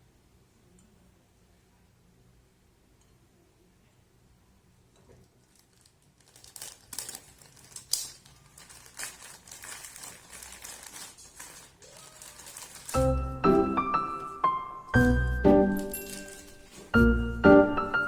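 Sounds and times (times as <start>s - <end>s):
plastic packaging crinkling: 5.2s - 15.1s, 15.7s - 17.1s.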